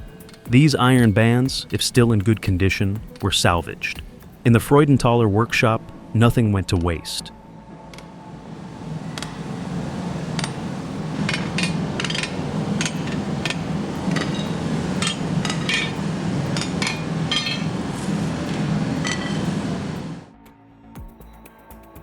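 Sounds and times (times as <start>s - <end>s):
steady low rumble: 7.3s - 20.3s
metal tools and bands clinking: 11.3s - 17.8s.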